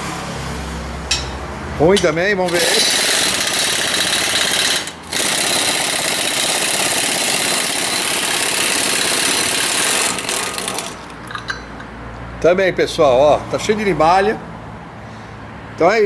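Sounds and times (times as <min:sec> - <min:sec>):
pneumatic impact wrench hammering: 0:02.0 - 0:11.9.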